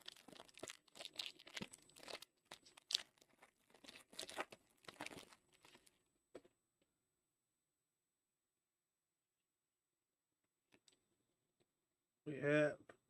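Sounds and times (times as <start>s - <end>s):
foil wrapper tearing and crinkling: 0.0s - 5.9s.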